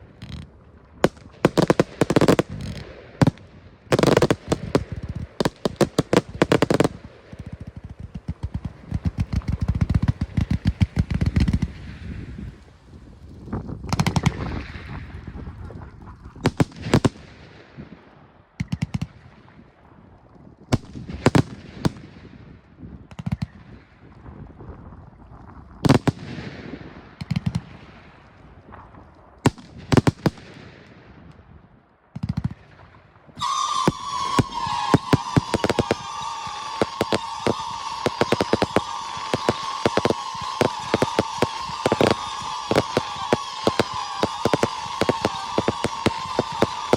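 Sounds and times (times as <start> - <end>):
fireworks bursting: 0.0 - 19.5, 25.9 - 31.3, 32.2 - 46.9.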